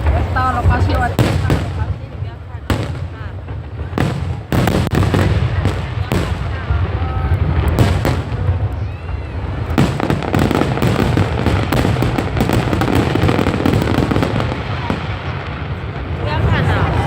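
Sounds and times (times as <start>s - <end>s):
fireworks bangs and crackling: 0.0s - 17.0s.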